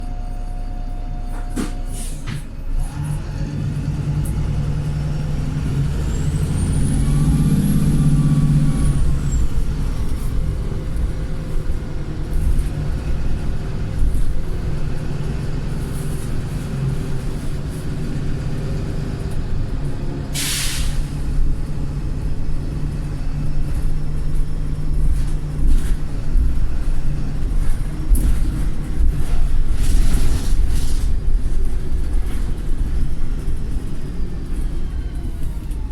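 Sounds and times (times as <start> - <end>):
bus diesel engine pulling: 0.0 - 35.9
air brake hiss: 1.6 - 2.4, 20.3 - 21.2.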